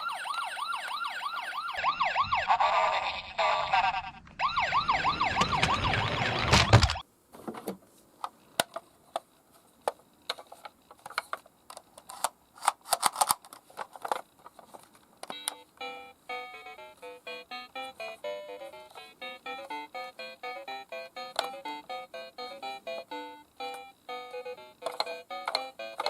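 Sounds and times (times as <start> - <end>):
toy sirens yelping: 0.0 - 7.0.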